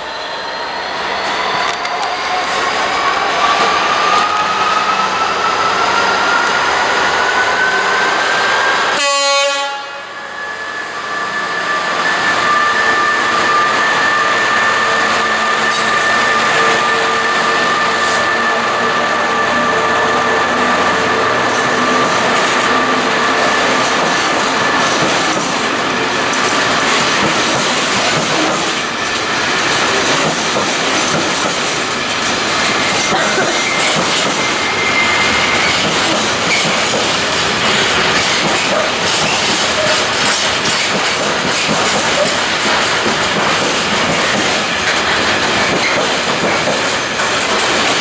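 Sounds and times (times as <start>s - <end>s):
train passing close by: 0.0s - 48.0s
high whining tones: 10.0s - 27.2s.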